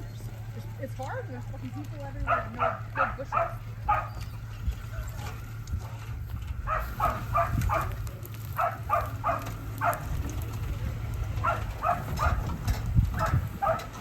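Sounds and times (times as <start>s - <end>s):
engine idling hum: 0.0s - 14.0s
dog barking: 2.2s - 4.3s, 6.6s - 8.0s, 8.6s - 10.2s, 11.4s - 14.0s.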